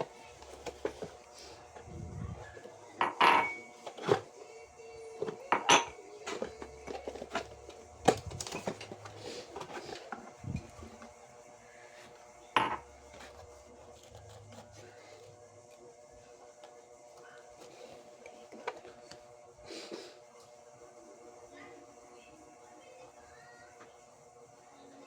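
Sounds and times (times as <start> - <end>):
kitchenware clinking and knocking: 3.0 - 4.3, 5.2 - 9.0, 12.6 - 12.9.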